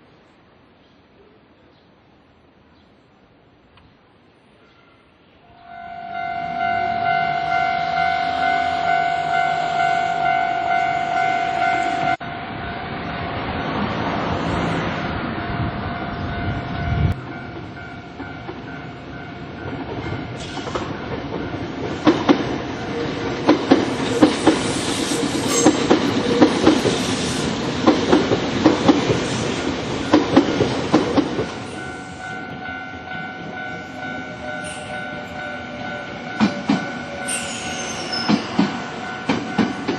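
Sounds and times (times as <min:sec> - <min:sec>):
level-crossing bell ringing: 0:05.5 - 0:12.8, 0:31.6 - 0:39.9
train wheels clacking on rail joints: 0:17.1 - 0:32.7, 0:34.4 - 0:39.9.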